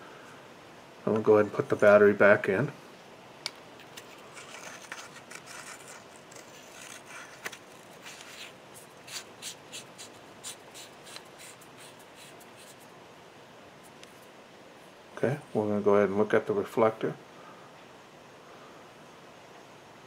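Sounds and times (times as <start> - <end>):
faint rubbing scrapes of threads: 3.8 - 12.9.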